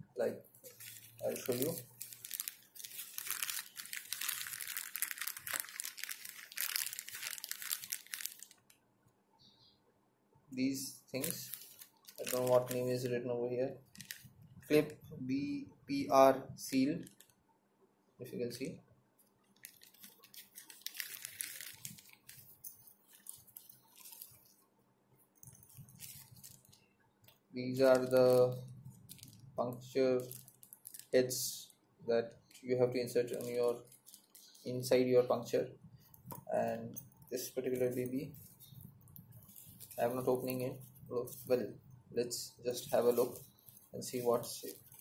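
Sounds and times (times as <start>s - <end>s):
plastic packaging crinkling: 0.5s - 8.8s, 11.1s - 13.1s, 13.8s - 15.0s, 17.0s - 17.3s, 19.4s - 24.6s, 25.4s - 31.7s, 32.4s - 41.8s, 42.7s - 45.0s.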